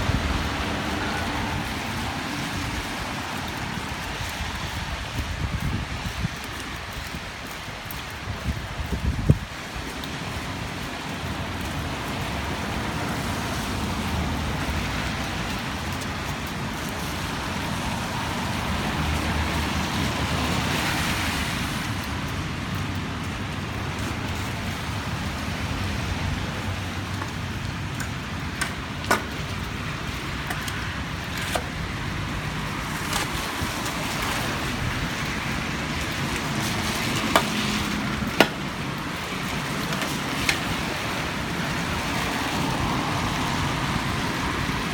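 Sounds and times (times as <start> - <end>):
passing vehicles hum and rumble: 0.0 - 44.9.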